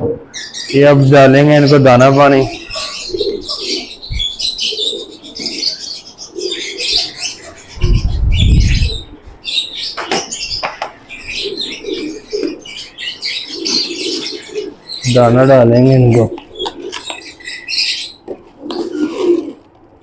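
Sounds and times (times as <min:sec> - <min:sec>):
pigeons cooing: 0:00.0 - 0:20.0
small birds chirping: 0:00.2 - 0:20.0
wings flapping: 0:16.3 - 0:17.4.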